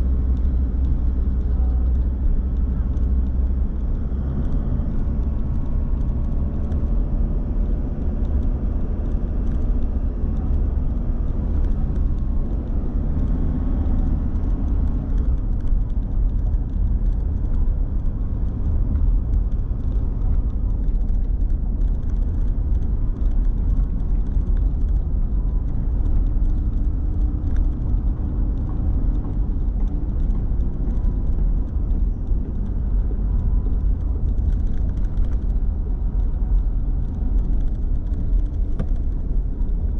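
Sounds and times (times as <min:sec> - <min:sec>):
car engine rumble: 0:00.0 - 0:39.9.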